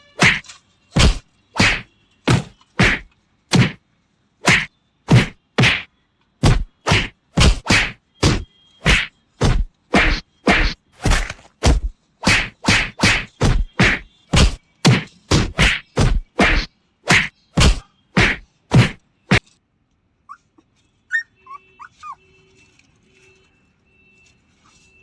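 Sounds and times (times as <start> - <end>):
sharp whacks: 0.2 - 3.8, 4.4 - 19.5.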